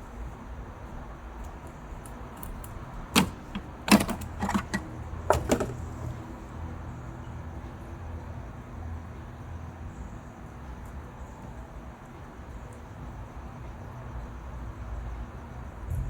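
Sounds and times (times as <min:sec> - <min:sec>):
sharp clicks and knocks on fittings: 0:01.4 - 0:06.2.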